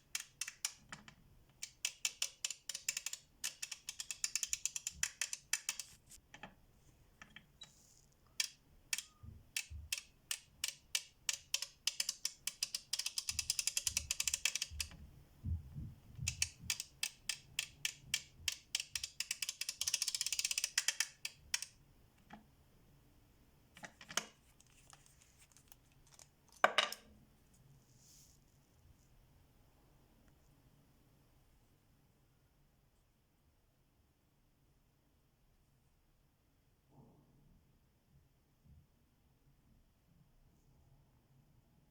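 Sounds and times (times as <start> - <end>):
ratchet clicking: 0.0 - 6.0, 8.4 - 14.9, 16.3 - 21.7.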